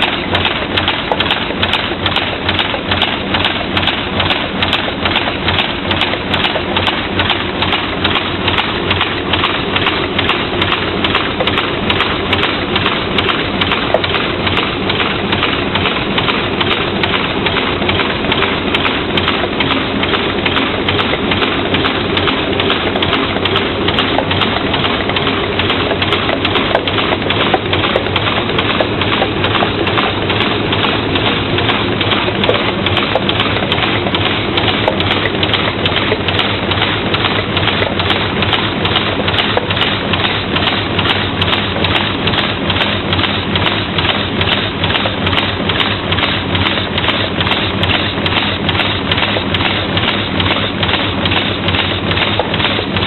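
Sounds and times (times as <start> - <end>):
continuous clatter of small knocks: 0.0 - 53.0
machine humming: 0.0 - 53.0
chaff cutter blades chopping: 19.2 - 53.0.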